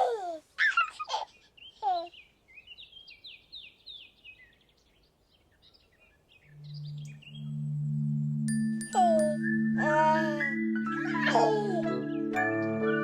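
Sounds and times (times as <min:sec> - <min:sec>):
birds singing: 0:00.6 - 0:13.0
low steady tone: 0:06.5 - 0:12.0.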